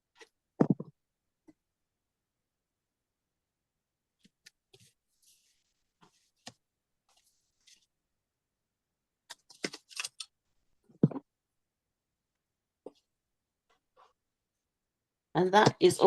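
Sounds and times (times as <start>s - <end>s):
cardstock clicks and rustles: 9.3s - 10.3s.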